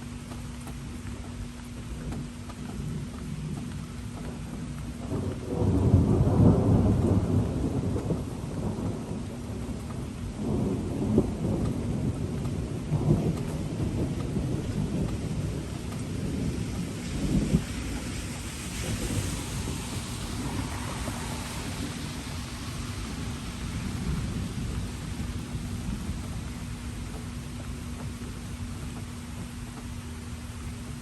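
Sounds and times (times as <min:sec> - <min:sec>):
steady rain: 0:00.0 - 0:31.0
rolling thunder: 0:05.0 - 0:27.0.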